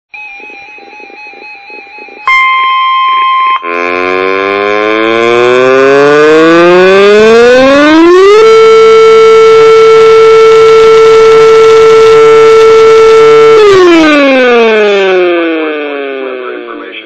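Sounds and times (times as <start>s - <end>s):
warning siren winding up: 0.2s - 16.8s
steady high beep: 2.2s - 4.4s.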